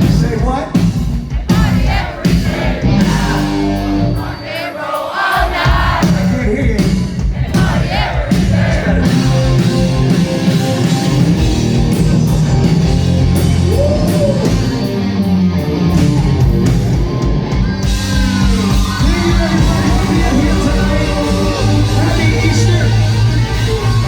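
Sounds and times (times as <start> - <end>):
bass guitar: 0.0 - 4.4, 5.7 - 24.0
drums: 0.0 - 24.0
electric guitar: 9.0 - 24.0.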